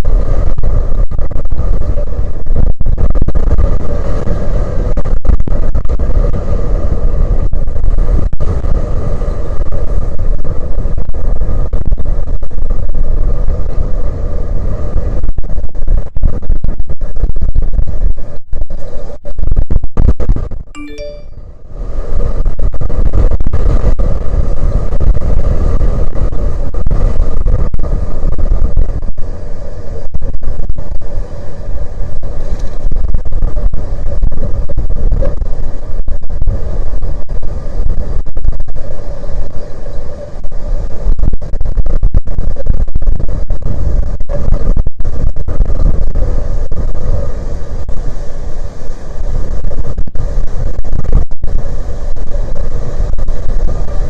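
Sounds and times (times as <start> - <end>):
strong wind buffeting microphone: 0.0 - 20.7, 21.6 - 54.0
faint steady drone: 20.8 - 50.8.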